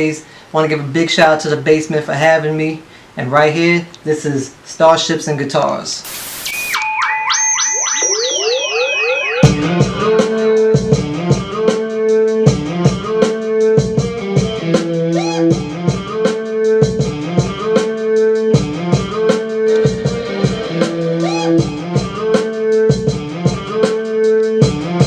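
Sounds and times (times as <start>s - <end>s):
looping guitar riff: 6.4s - 11.3s
drum kit beat: 9.4s - 25.0s.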